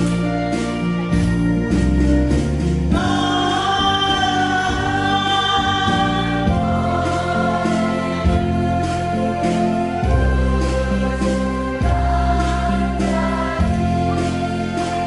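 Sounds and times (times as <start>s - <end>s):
ballad accompaniment: 0.0s - 15.0s
person singing long notes: 2.9s - 15.0s.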